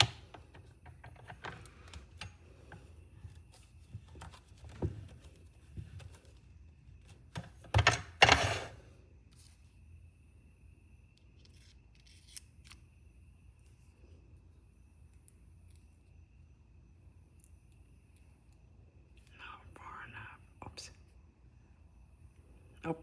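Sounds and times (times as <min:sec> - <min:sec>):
small parts clicking and tapping: 0:00.0 - 0:04.8.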